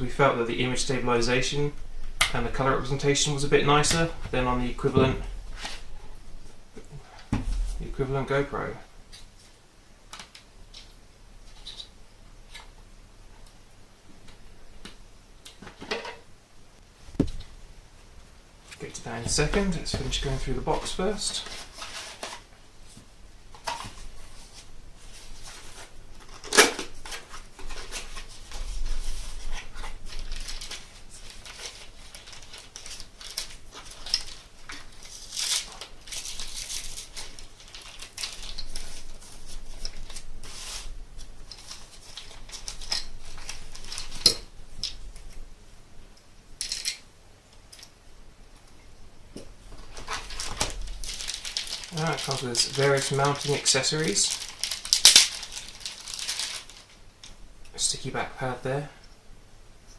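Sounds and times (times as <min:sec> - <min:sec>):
packaging rustling: 0:18.8 - 0:22.5, 0:23.5 - 0:45.3, 0:49.6 - 0:57.0
small plastic parts clicking: 0:46.6 - 0:47.0.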